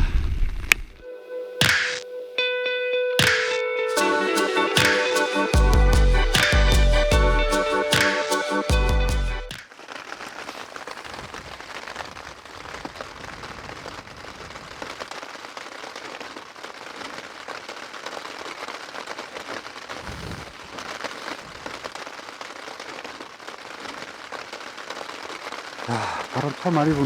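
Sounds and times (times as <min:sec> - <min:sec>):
music: 0:01.0 - 0:09.6
heavy rain falling: 0:04.0 - 0:27.0.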